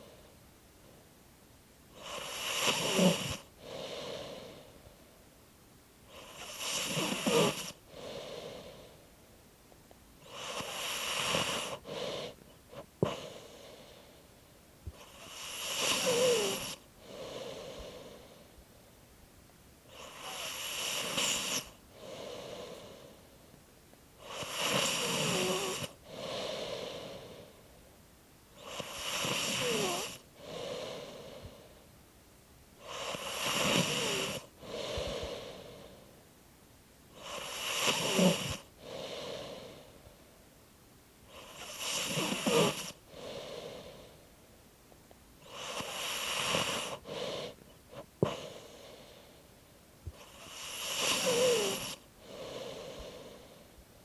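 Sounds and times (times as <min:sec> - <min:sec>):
person snoring: 0:02.0 - 0:04.7, 0:06.1 - 0:08.9, 0:10.2 - 0:14.0, 0:14.9 - 0:18.4, 0:19.9 - 0:23.2, 0:24.2 - 0:27.5, 0:28.6 - 0:31.7, 0:32.8 - 0:36.1, 0:37.2 - 0:40.0, 0:41.3 - 0:44.1, 0:45.4 - 0:49.2, 0:50.1 - 0:53.6.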